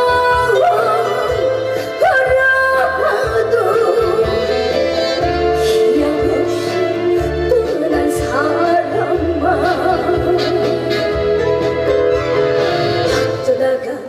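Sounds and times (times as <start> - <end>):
trot song music: 3.2 - 13.5.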